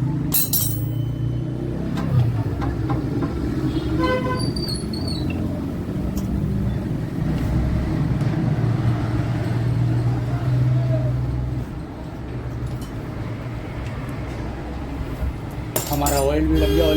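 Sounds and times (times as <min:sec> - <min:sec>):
street traffic rumble: 0:00.0 - 0:16.9
vehicle horn tooting: 0:03.6 - 0:04.6, 0:16.4 - 0:16.9.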